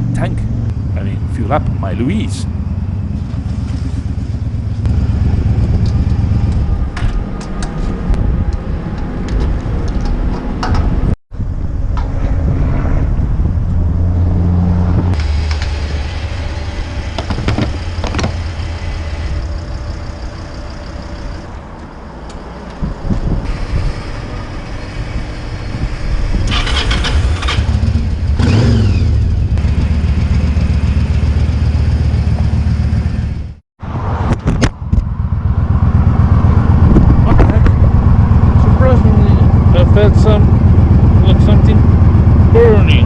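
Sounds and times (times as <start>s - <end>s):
motorcycle engine running: 0.0s - 8.5s, 15.0s - 21.5s, 22.9s - 33.6s, 34.7s - 43.0s.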